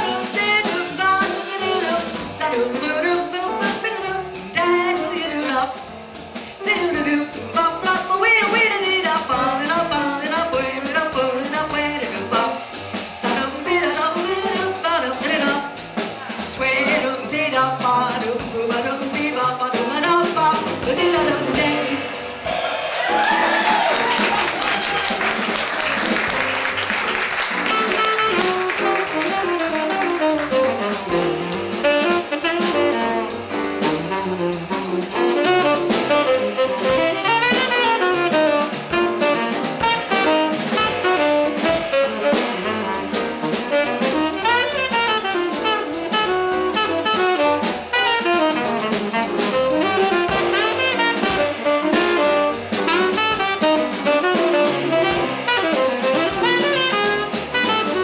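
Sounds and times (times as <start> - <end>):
piano bass and drums: 0.0 - 58.0
saxophone improvising: 23.3 - 58.0.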